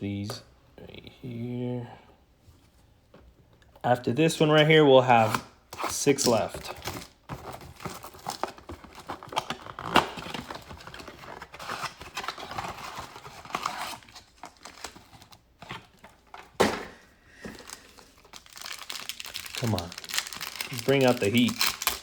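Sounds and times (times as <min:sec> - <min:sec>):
wrapper crinkling and tearing: 0:06.2 - 0:16.0, 0:17.6 - 0:22.0.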